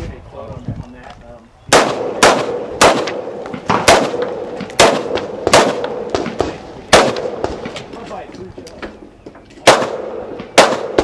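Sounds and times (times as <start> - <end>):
gunshots with echo: 1.7 - 7.8, 9.6 - 11.0.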